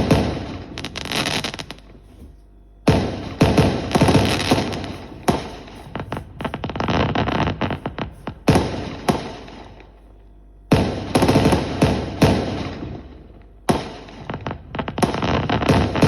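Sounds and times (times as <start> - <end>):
fireworks bursting with loud bangs: 0.0 - 16.0
rapid crackling pops: 2.9 - 10.0, 13.7 - 16.0.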